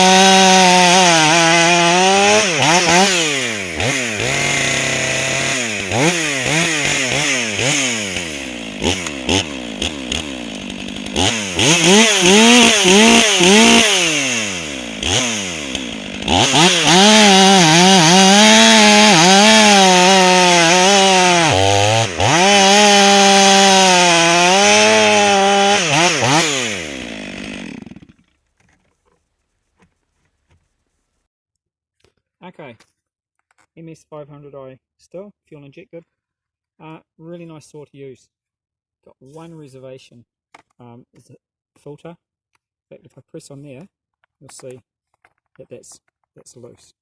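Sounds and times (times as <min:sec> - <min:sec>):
chainsaw revving and cutting wood: 0:00.0 - 0:28.4.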